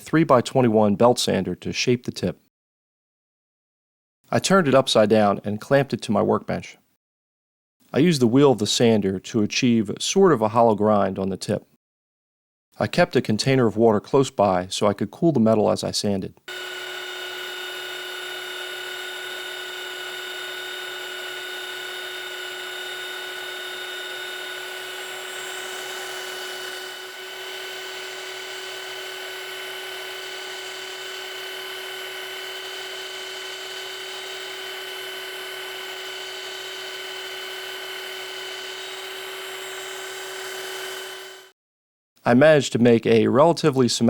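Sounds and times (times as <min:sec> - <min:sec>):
belt sander grinding steel: 0:16.5 - 0:41.5.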